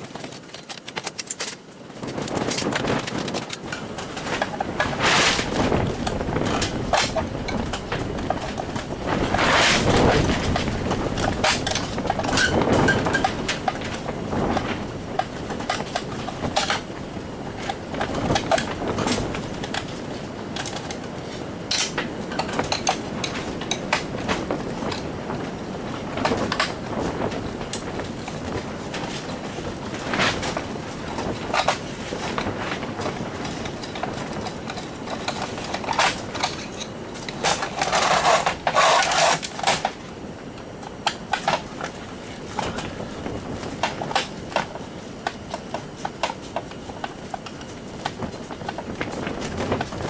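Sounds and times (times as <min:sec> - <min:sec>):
tools and metal parts clattering: 0:00.0 - 0:40.0
wind rumbling on microphone: 0:02.0 - 0:39.4, 0:40.0 - 0:50.0.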